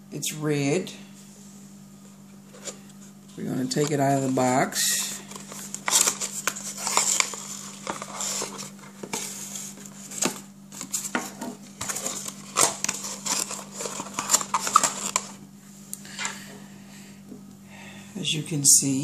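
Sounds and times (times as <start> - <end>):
steady low hum: 0.0 - 19.0
box packaging clicks and rustles: 3.7 - 15.4.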